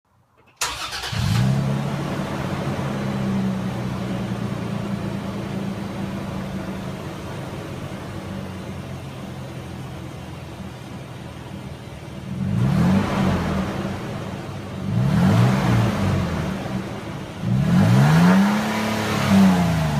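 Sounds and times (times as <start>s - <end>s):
engine cranking: 0.4s - 1.5s
engine idling: 0.4s - 12.4s.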